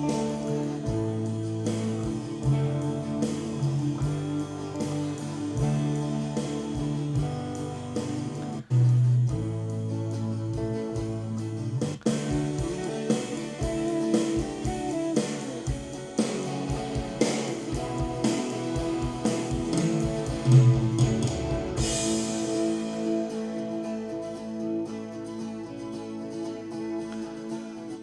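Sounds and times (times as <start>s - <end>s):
band music with guitar and drums: 0.0s - 28.0s
cymbal crash: 12.2s - 24.4s.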